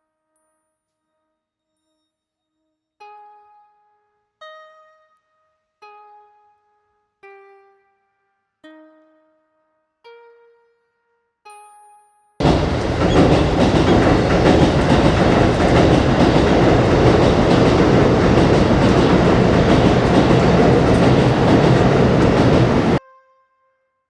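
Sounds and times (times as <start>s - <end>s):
overhead train rumbling: 12.4s - 23.0s.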